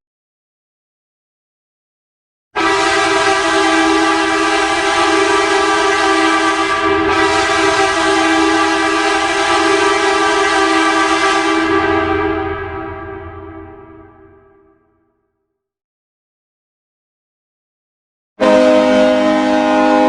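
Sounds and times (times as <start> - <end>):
goal horn blast: 2.6 - 14.7, 18.4 - 20.0.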